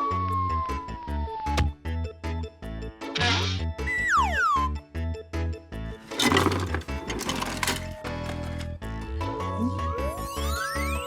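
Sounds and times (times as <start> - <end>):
clicks and clatter: 6.0 - 8.8.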